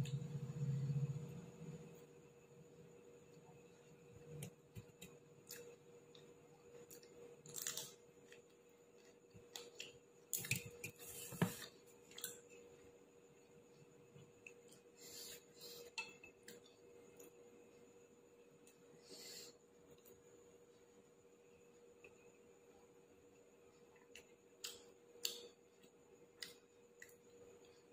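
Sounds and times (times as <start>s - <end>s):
faint steady hum: 0.0s - 27.9s.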